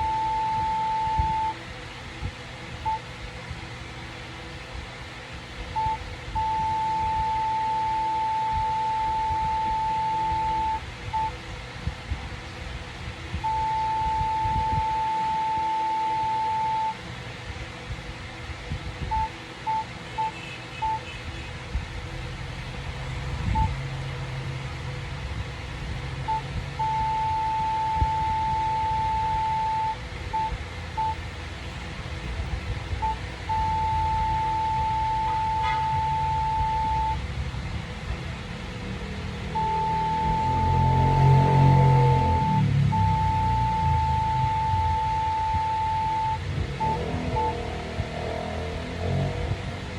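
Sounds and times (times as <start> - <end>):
morse code beeps: 0.0 - 1.6, 5.8 - 11.4, 13.4 - 17.0, 19.1 - 21.1, 23.4 - 23.9, 26.2 - 31.2, 33.0 - 37.2, 39.4 - 48.5.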